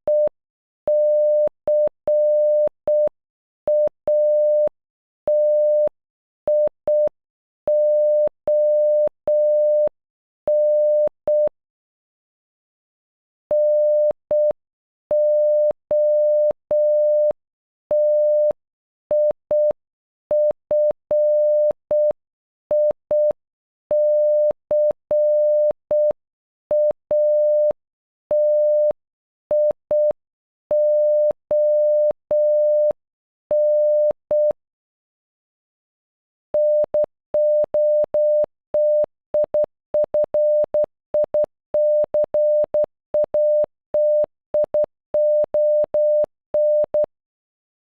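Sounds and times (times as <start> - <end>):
morse code beeps: 20.4 - 34.6, 36.6 - 47.1.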